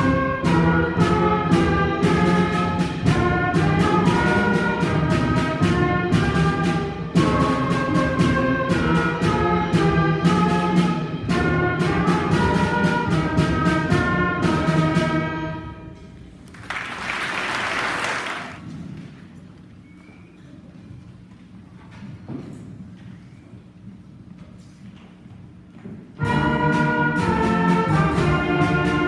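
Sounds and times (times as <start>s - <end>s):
percussion strikes: 0.0s - 15.7s, 26.2s - 29.0s
concert band playing: 0.0s - 15.8s, 26.2s - 29.0s.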